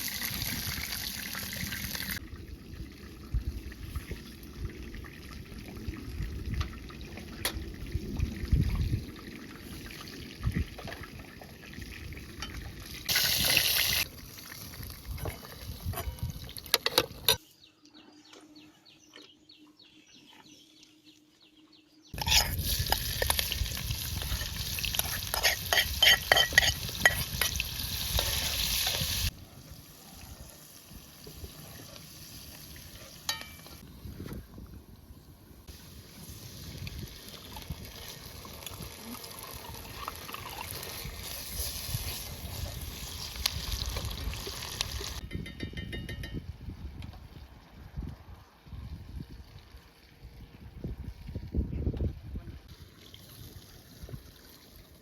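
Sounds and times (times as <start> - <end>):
food sizzling in a pan: 22.2 - 33.0, 37.4 - 45.2.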